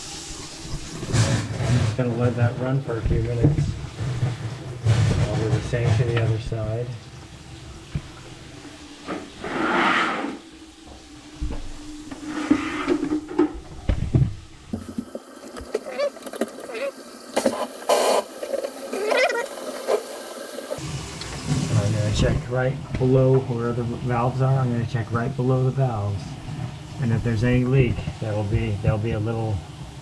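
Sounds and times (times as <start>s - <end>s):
water running from faucet: 0.0s - 9.6s, 14.6s - 30.0s.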